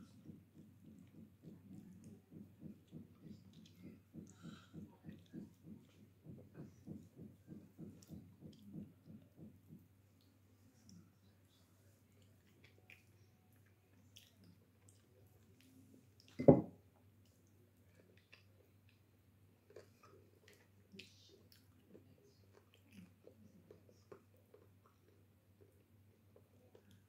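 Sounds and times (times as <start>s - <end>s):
faint clicks and smacks: 0.0s - 27.0s
person chewing food: 12.1s - 16.4s, 17.2s - 27.0s.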